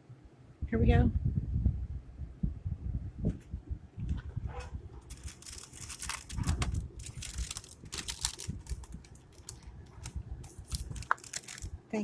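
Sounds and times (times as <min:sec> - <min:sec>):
vending machine clicking and rattling: 0:05.0 - 0:11.7.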